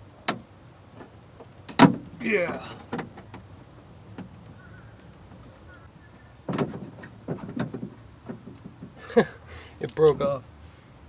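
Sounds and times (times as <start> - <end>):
loud clatter of car parts: 1.0 - 3.5, 6.4 - 10.2
faint squeaks: 2.2 - 8.5.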